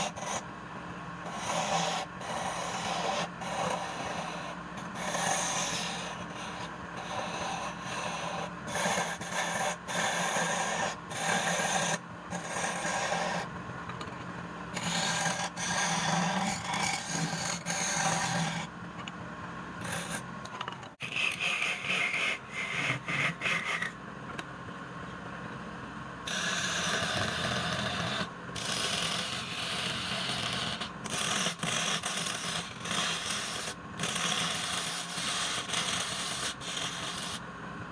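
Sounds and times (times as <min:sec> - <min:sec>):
tool scraping wood on lathe: 0:01.3 - 0:13.5, 0:14.8 - 0:18.7, 0:19.8 - 0:20.3, 0:26.3 - 0:37.4.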